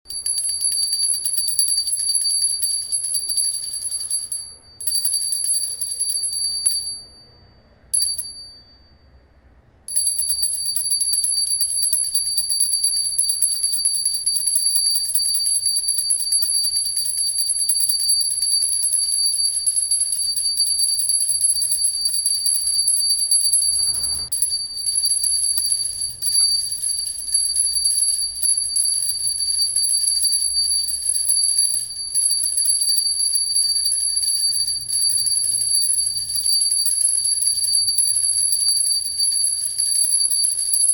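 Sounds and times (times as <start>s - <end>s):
hand bell ringing rapidly: 0.1s - 7.2s, 8.0s - 8.6s, 9.9s - 40.9s.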